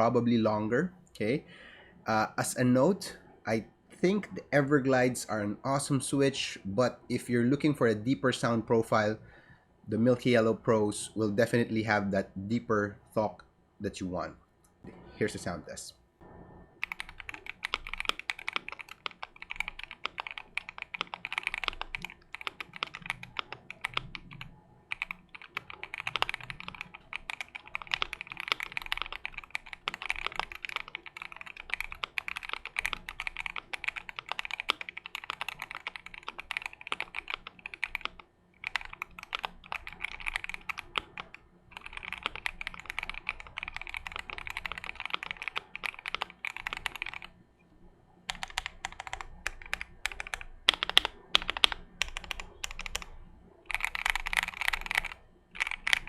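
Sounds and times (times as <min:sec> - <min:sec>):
mechanical keyboard typing: 0:16.8 - 0:47.4, 0:48.3 - 0:56.0.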